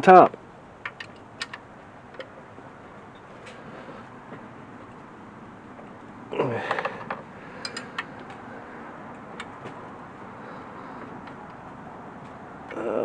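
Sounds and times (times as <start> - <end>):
steady background noise: 0.0 - 13.0
metal tools clinking and scraping: 0.9 - 2.3, 6.6 - 8.4.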